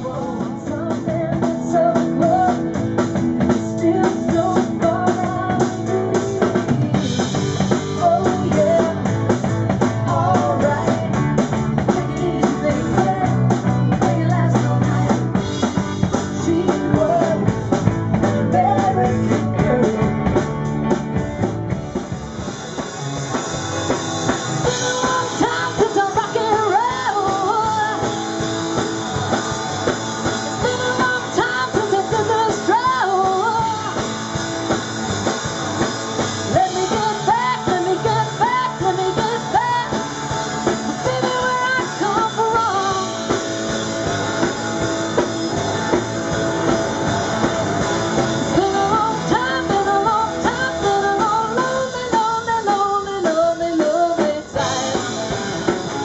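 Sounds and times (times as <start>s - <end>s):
drum kit: 0.0s - 56.0s
rock band playing live: 0.0s - 56.0s
pitch-bending lead melody: 15.0s - 52.6s.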